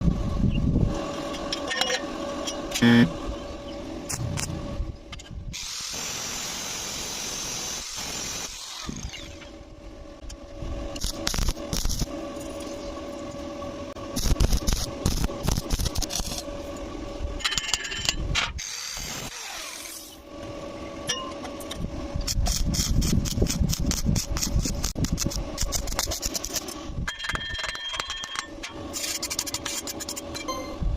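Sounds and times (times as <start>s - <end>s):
steady hum: 0.0s - 6.2s, 8.9s - 19.3s
tool clicking and scraping on pipe: 22.4s - 30.4s.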